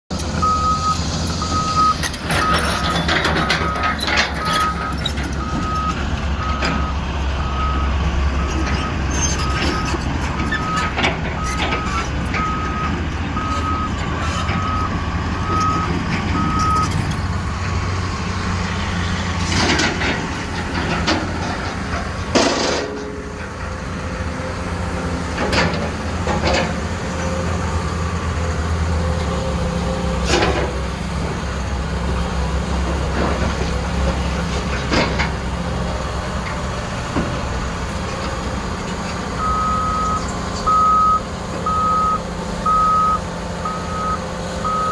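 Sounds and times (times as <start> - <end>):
excavator diesel engine running: 0.1 - 44.9
travel alarm beeping: 0.4 - 8.0, 39.4 - 44.9.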